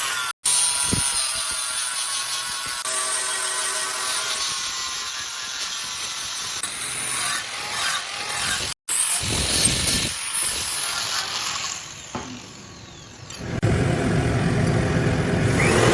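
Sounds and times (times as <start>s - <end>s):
power tool grinding steel: 0.0s - 13.6s.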